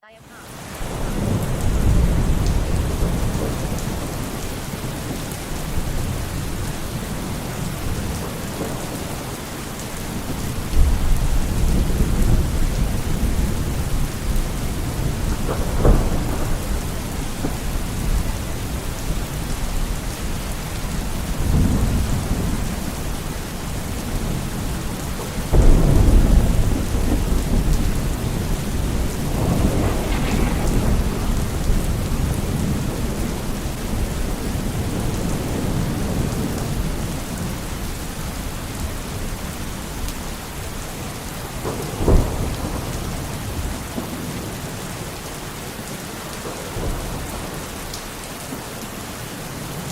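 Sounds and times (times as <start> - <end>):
heavy rain: 0.0 - 49.9
sharp thunderclap: 0.8 - 9.4, 10.1 - 19.9, 21.1 - 37.4, 41.6 - 44.7
thunder rolling: 0.8 - 39.3, 40.7 - 44.8.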